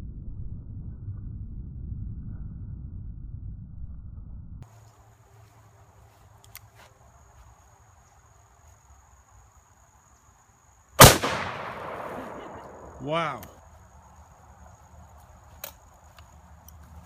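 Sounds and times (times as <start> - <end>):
revolver gunshot: 11.0 - 13.3
gunshot echo: 11.0 - 13.4.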